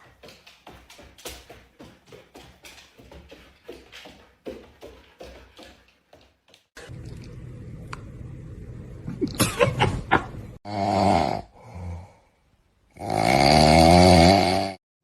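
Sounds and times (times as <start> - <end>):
low steady hum: 6.8 - 10.6.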